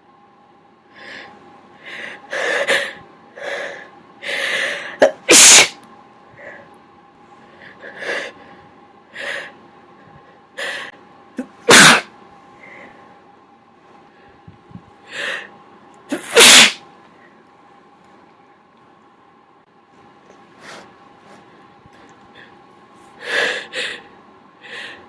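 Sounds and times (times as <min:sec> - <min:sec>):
person sneezing: 0:05.0 - 0:05.8, 0:11.4 - 0:12.1, 0:16.1 - 0:16.8.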